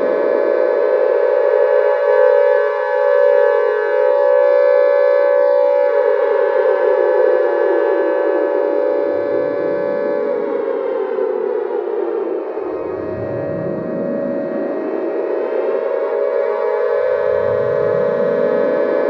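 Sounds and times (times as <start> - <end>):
siren-like creature drone: 0.0 - 19.0
low tone sliding downward: 8.2 - 19.0.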